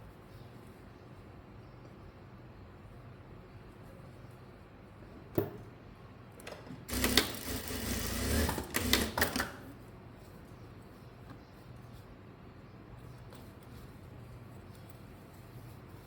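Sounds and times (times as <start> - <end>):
sewing machine stitching: 6.5 - 9.6.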